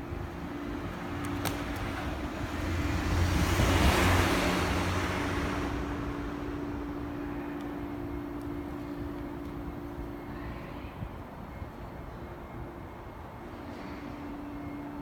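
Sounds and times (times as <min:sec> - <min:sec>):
road vehicle passing: 0:00.3 - 0:09.8.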